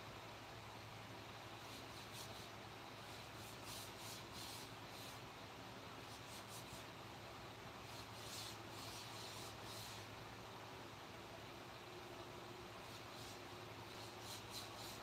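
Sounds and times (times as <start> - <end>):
scraping strokes on wood: 1.6 - 5.3, 6.0 - 6.9, 7.8 - 10.1, 12.7 - 15.0.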